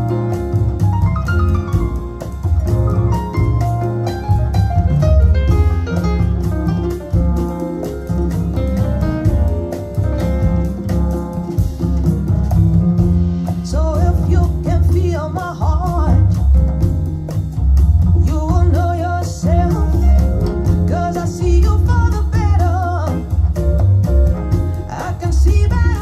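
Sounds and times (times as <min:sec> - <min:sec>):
deep bass line: 0:00.0 - 0:26.0
guitar: 0:00.0 - 0:26.0
person singing: 0:13.6 - 0:16.3, 0:18.2 - 0:23.4, 0:24.9 - 0:26.0.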